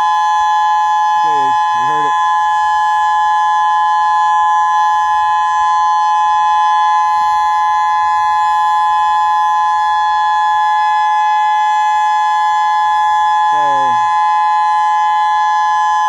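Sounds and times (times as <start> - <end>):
warning siren steady tone: 0.0 - 16.0.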